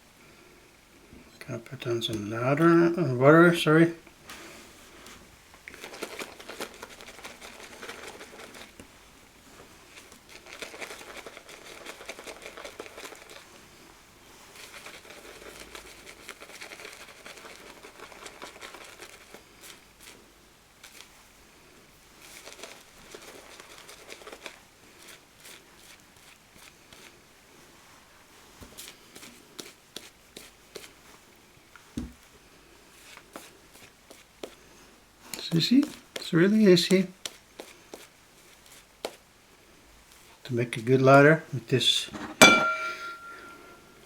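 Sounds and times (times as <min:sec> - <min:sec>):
shaving brush swishing lather: 0:22.2 - 0:27.2.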